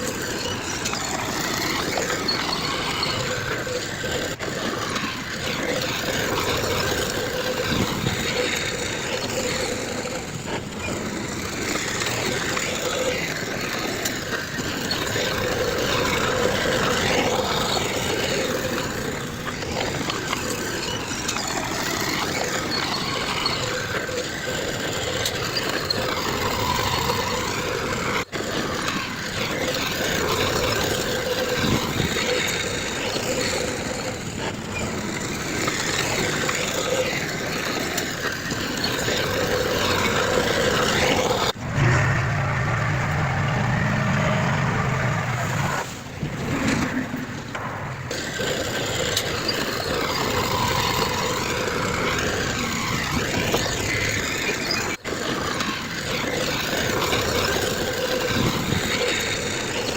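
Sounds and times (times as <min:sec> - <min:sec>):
heavy machinery diesel engines: 0:00.0 - 0:59.9
steady hum: 0:41.5 - 0:47.2.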